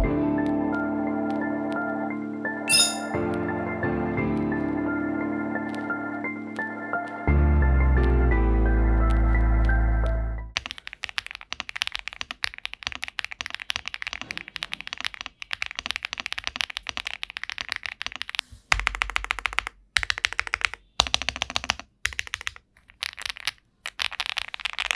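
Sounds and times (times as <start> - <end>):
fast typing on mechanical keyboard: 18.9 - 24.9.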